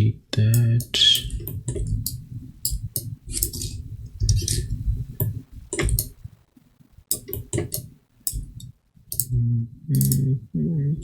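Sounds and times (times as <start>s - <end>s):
mouse and keyboard clicks: 0.6s - 6.3s, 7.1s - 9.3s, 10.0s - 10.2s.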